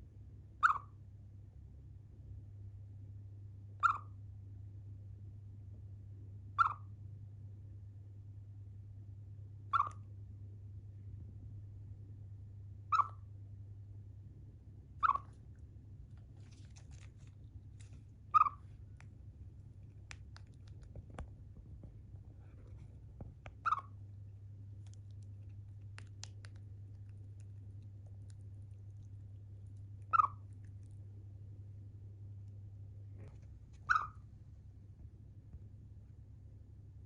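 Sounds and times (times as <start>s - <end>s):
steady low hum: 0.0s - 37.0s
chipmunk chirping: 0.6s - 0.9s, 3.8s - 4.2s, 6.6s - 6.9s, 9.7s - 10.0s, 12.9s - 13.2s, 15.0s - 15.3s, 18.3s - 18.7s, 23.6s - 24.0s, 30.0s - 30.7s, 33.8s - 34.2s
faint clicking: 19.8s - 21.7s.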